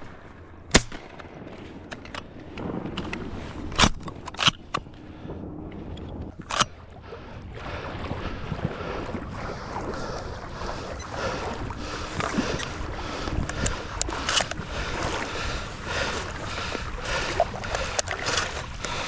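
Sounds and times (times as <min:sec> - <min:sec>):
water sloshing and splashing: 0:00.0 - 0:19.0.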